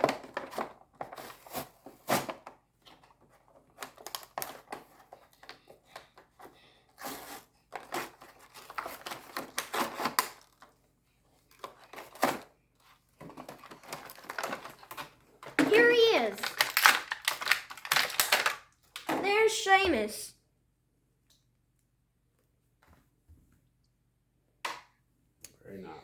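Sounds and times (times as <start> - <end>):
packaging clicking and crinkling: 0.0 - 10.8, 11.4 - 19.1.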